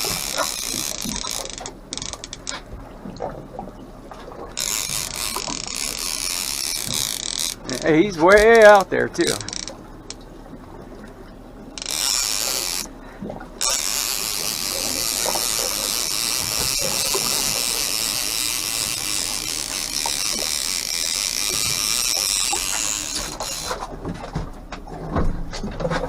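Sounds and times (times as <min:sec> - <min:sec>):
fishing reel ratcheting: 0:00.0 - 0:02.7, 0:04.6 - 0:10.2, 0:11.8 - 0:13.0, 0:13.6 - 0:23.9.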